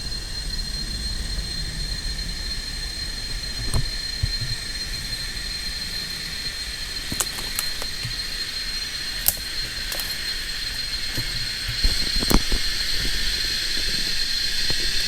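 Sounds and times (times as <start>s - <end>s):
insects droning: 0.0s - 15.0s
light clicks and knocks: 7.1s - 13.2s.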